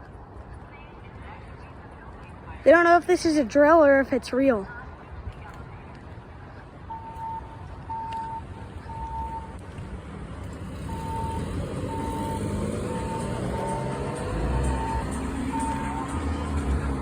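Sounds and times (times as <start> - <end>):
vehicle engine rumble: 0.0 - 17.0
fire alarm beeping: 6.9 - 9.5, 10.9 - 16.1.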